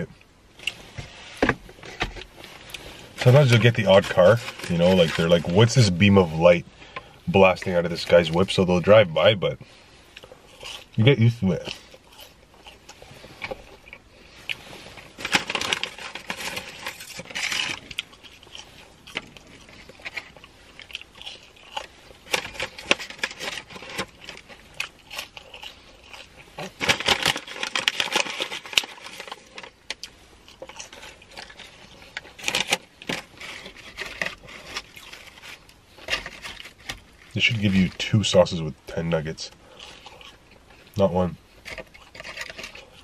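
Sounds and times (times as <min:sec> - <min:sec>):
crunchy chewing: 0:09.6 - 0:43.0.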